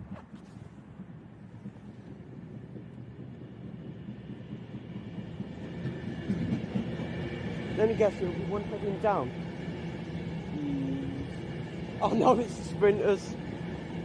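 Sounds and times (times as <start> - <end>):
train rumble: 0.0 - 14.0.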